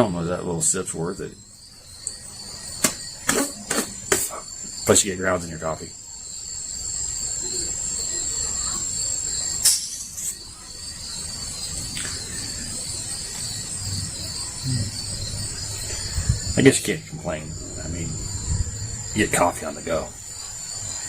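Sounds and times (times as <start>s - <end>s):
high-pitched insect chirring: 1.0s - 21.0s
low rumble: 15.2s - 21.0s.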